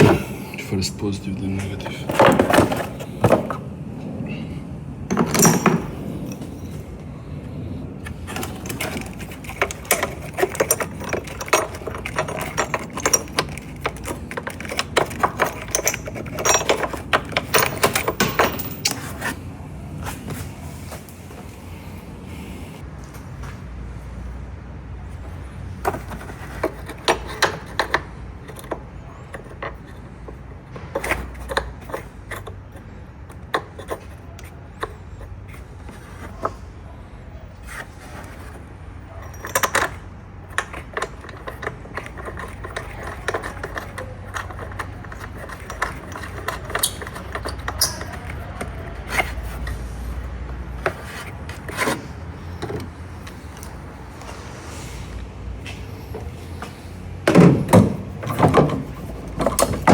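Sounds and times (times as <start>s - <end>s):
wrench clicking and scraping on metal: 5.1s - 6.8s, 8.0s - 19.3s, 37.7s - 53.8s.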